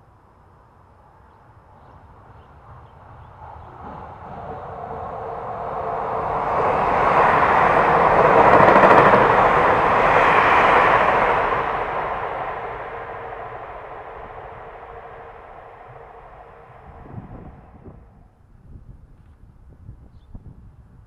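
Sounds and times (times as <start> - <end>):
vehicle passing by: 4.5 - 18.1.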